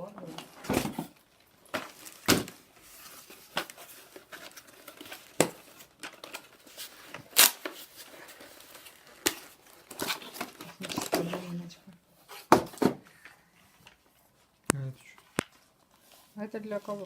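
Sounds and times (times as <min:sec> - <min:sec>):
plastic packaging crinkling: 0:01.1 - 0:11.8.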